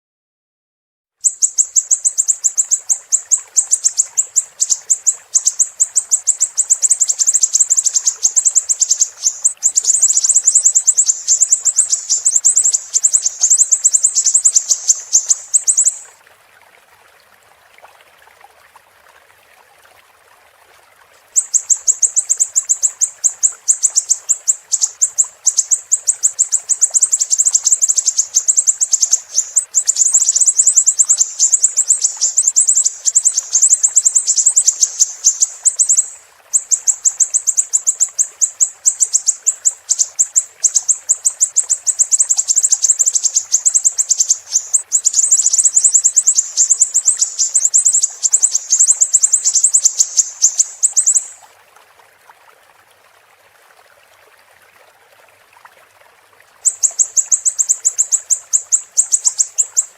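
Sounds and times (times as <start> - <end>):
bird trilling high-pitched: 1.2 - 16.1, 21.4 - 51.4, 56.7 - 59.9
faint hiss: 1.2 - 17.2, 20.6 - 51.8.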